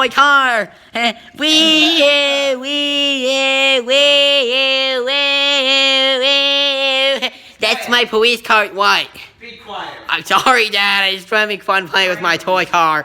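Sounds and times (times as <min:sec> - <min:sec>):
person imitating car engine: 0:00.8 - 0:07.3.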